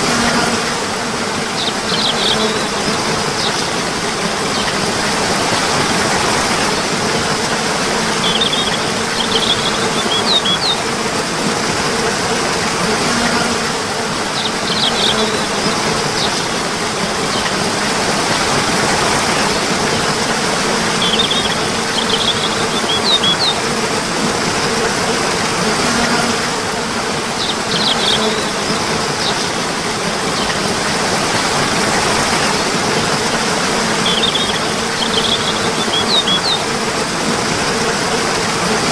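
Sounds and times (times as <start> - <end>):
flowing water: 0.0 - 38.9
small bird chirping: 1.6 - 3.8, 8.1 - 10.9, 14.4 - 16.4, 21.0 - 23.7, 27.4 - 28.5, 34.0 - 36.7.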